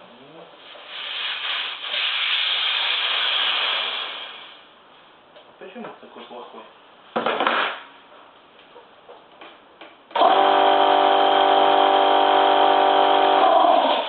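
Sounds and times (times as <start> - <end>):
air compressor running: 0.9 - 4.6, 10.1 - 14.0.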